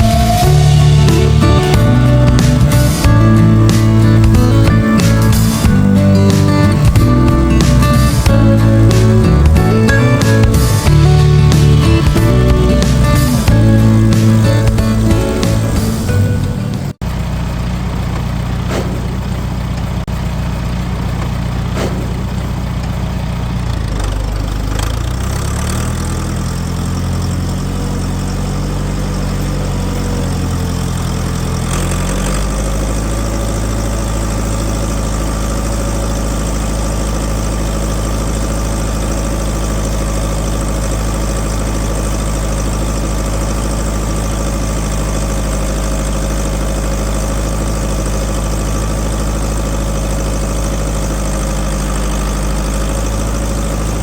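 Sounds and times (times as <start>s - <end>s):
farm machinery engine running: 0.0s - 54.0s.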